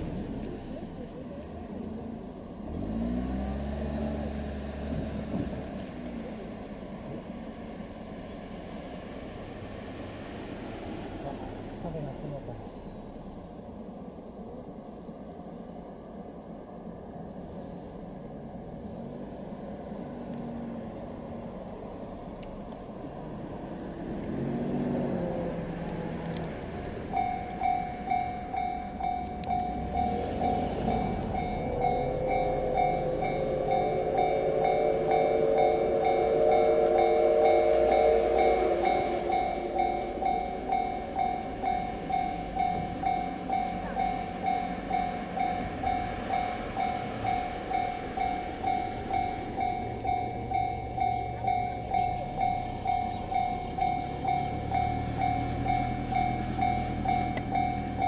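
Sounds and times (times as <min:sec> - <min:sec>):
low rumble of train: 0:00.0 - 0:58.0
steam locomotive chime whistle: 0:27.1 - 0:58.0
level crossing bell dinging: 0:27.2 - 0:58.0.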